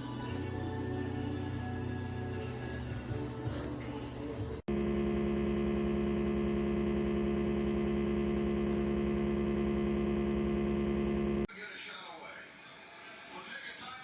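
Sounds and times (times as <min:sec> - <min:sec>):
music: 0:00.0 - 0:04.6
fridge compressor humming: 0:04.7 - 0:11.5.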